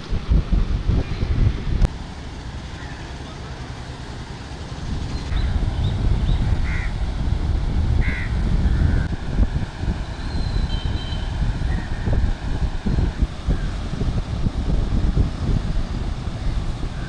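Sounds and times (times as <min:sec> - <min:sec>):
wind buffeting microphone: 0:00.0 - 0:17.0
bird calls: 0:02.6 - 0:03.8.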